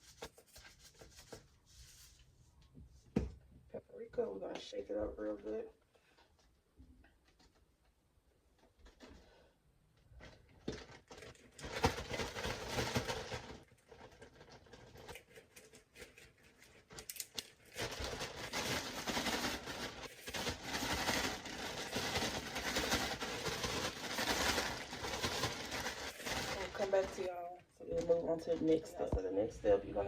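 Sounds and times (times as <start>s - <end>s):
plastic bag of meal shaken: 10.1s - 29.0s.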